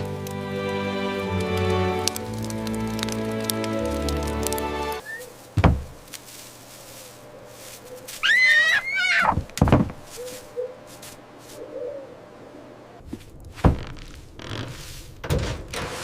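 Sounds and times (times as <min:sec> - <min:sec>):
cartoon dull thud: 0:05.6 - 0:06.0
high squeaky cartoon call: 0:08.2 - 0:09.4.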